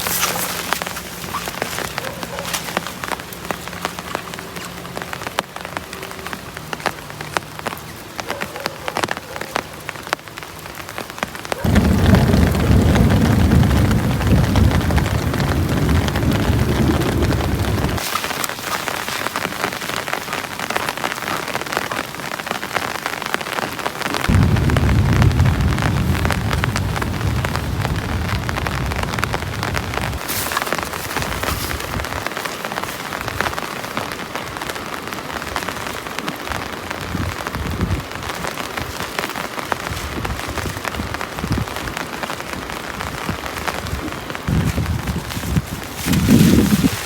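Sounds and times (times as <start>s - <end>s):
steady rain falling: 0.0s - 47.0s
deep low rumble: 11.7s - 18.0s, 24.3s - 30.2s.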